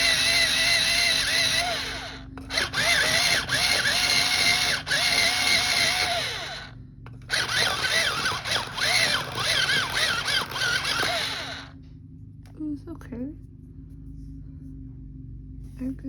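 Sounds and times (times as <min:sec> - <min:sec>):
electric pencil sharpener motor: 0:00.0 - 0:11.7.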